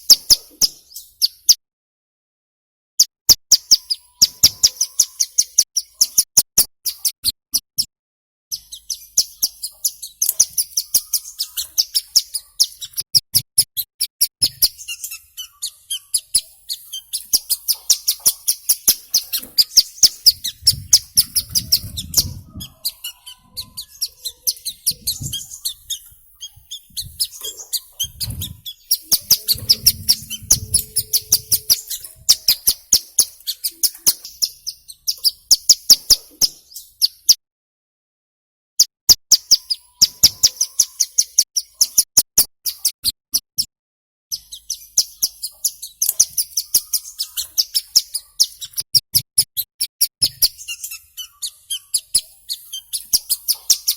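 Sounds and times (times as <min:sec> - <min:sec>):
bird high sharp chirps: 0:03.3 - 0:07.2, 0:08.5 - 0:37.4, 0:39.3 - 0:43.0, 0:44.3 - 0:53.9.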